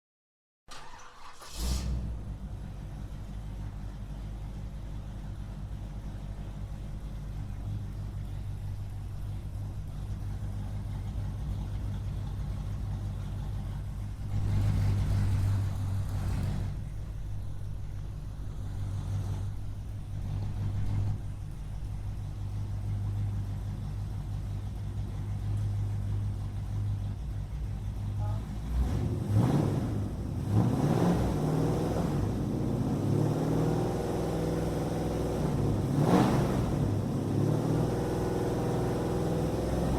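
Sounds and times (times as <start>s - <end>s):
engine revving: 0.7s - 2.3s, 14.2s - 17.0s, 18.4s - 21.4s, 28.4s - 39.9s
car engine idling: 0.7s - 39.9s
car engine starting: 0.7s - 39.9s.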